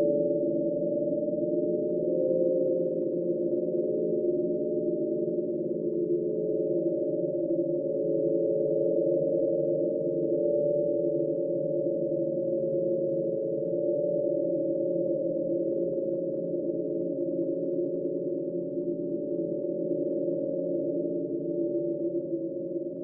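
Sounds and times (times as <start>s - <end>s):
low wavering drone: 0.0s - 23.0s.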